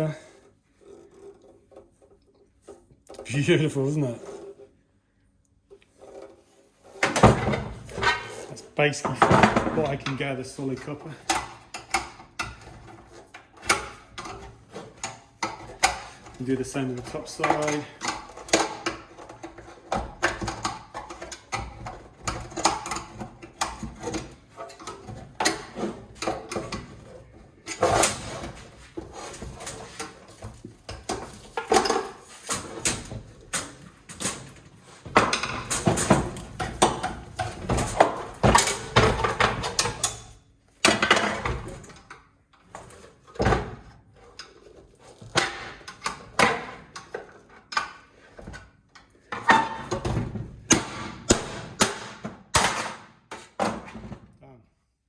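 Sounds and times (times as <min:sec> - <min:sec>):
metal clanking and knocking: 0:07.0 - 0:42.1.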